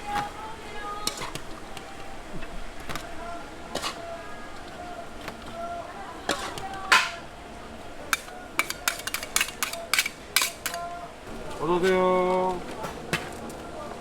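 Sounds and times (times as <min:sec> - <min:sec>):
metal utensils clattering against pans: 0:01.0 - 0:01.5, 0:03.7 - 0:04.1, 0:06.3 - 0:07.3, 0:08.1 - 0:10.9.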